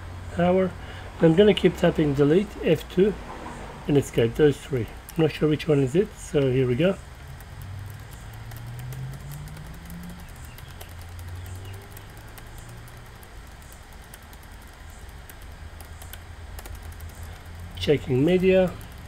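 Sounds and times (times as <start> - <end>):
laptop keys tapping: 4.2 - 19.0.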